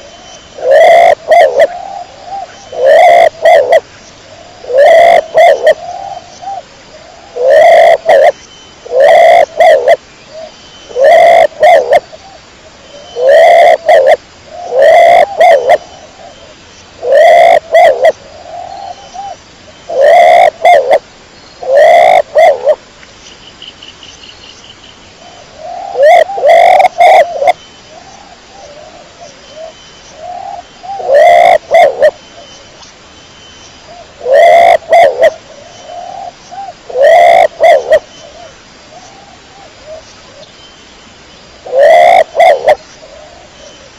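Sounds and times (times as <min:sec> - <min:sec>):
pigeon cooing: 0:00.6 - 0:03.8, 0:04.4 - 0:06.6, 0:07.2 - 0:10.0, 0:10.9 - 0:12.0, 0:13.0 - 0:16.3, 0:17.0 - 0:21.0, 0:21.6 - 0:22.8, 0:25.6 - 0:27.6, 0:28.7 - 0:32.2, 0:34.2 - 0:38.1, 0:41.6 - 0:43.6.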